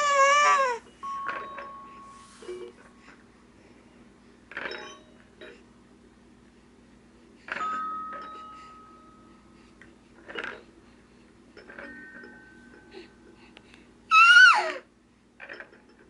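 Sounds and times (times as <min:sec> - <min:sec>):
toy chime ringing: 0:01.0 - 0:02.2.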